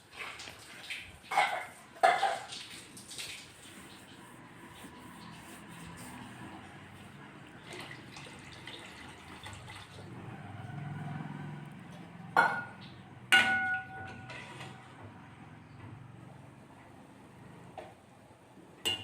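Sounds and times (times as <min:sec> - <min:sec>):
liquid bubbling in a pan: 0:07.1 - 0:14.8
utensil clinking on cookware: 0:12.2 - 0:14.8.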